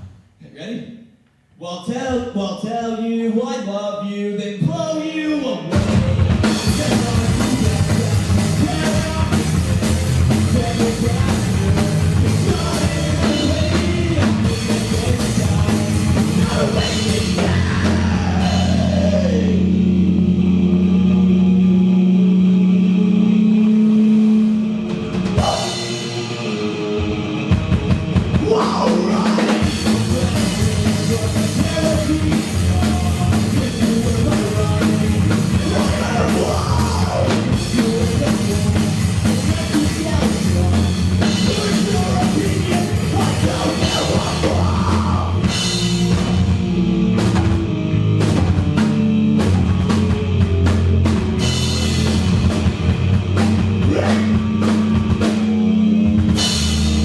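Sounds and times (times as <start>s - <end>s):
drums crashing: 5.6s - 21.6s, 23.9s - 57.0s
rock band playing live: 5.6s - 57.0s.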